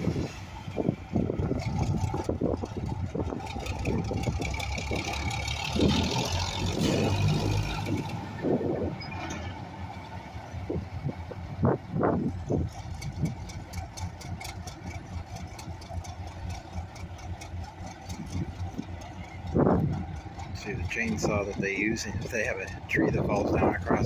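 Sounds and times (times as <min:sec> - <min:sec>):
diesel locomotive engine humming: 0:00.0 - 0:24.0
irregular clatter: 0:01.4 - 0:08.4, 0:12.4 - 0:24.0.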